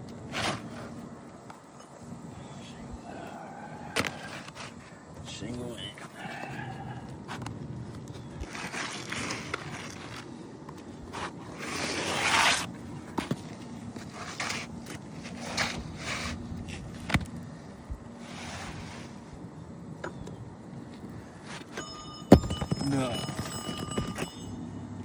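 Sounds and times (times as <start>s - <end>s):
shingle scraping: 8.1s - 17.2s, 18.1s - 19.3s.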